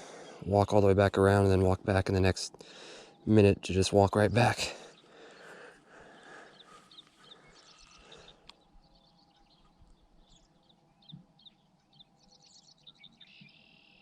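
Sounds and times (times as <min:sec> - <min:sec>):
high bird chirps: 0:06.4 - 0:14.0.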